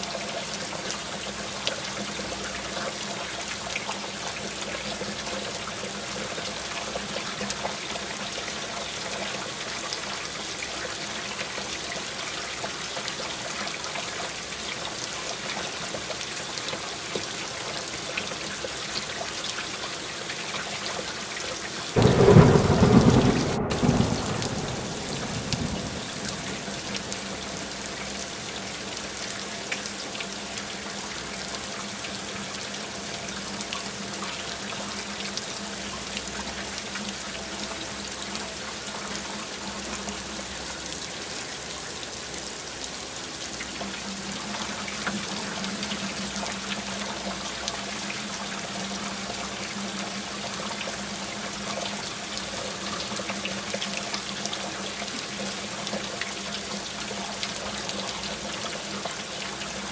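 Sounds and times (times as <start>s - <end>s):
steady rain falling: 0.0s - 59.9s
thunderclap rumbling: 22.0s - 27.0s.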